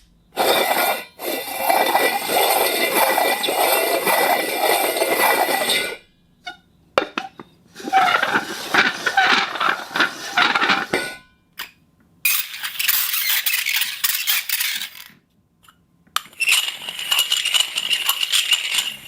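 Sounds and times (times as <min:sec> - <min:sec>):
hard object scraping concrete: 0:00.4 - 0:06.0, 0:07.2 - 0:11.2, 0:16.4 - 0:19.0.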